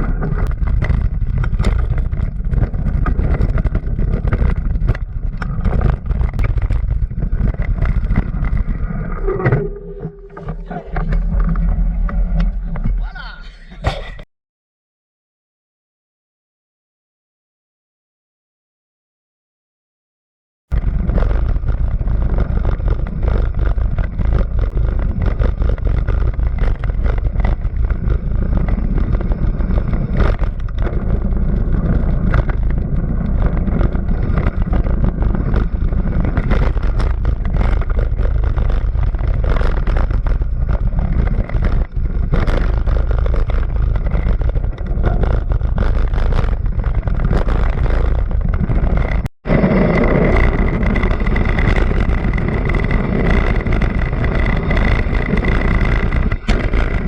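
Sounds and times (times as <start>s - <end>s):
sharp clicks and knocks: 0.0s - 13.0s.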